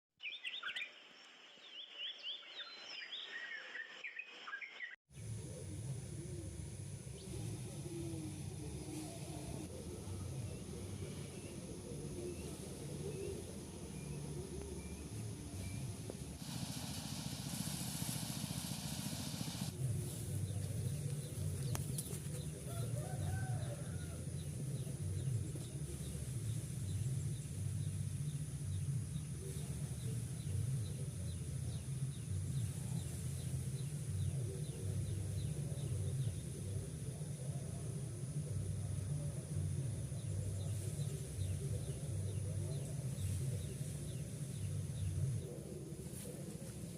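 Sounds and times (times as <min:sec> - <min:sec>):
hiss: 0:15.6 - 0:19.8.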